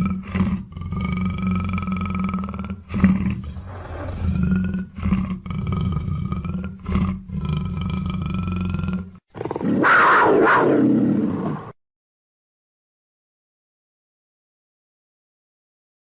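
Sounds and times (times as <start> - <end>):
big cat roaring: 0.0 - 11.7.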